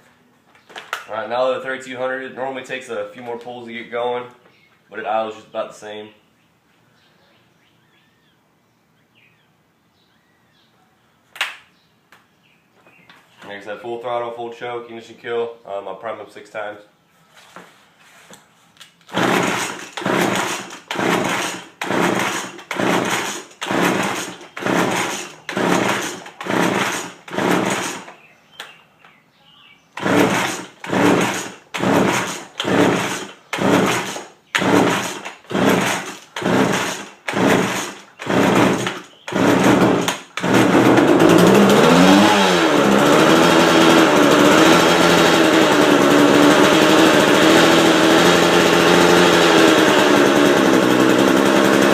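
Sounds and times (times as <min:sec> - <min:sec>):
chainsaw pull-cord yanks: 0:18.9 - 0:28.2, 0:30.0 - 0:51.9
chainsaw engine running: 0:19.1 - 0:28.2, 0:30.0 - 0:51.9.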